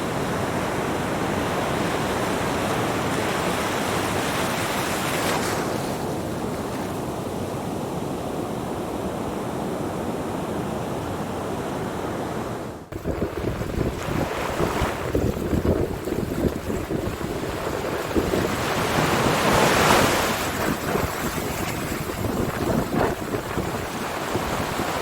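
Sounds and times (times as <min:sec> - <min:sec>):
ocean waves washing in: 0:00.0 - 0:25.0
wind buffeting microphone: 0:12.9 - 0:25.0.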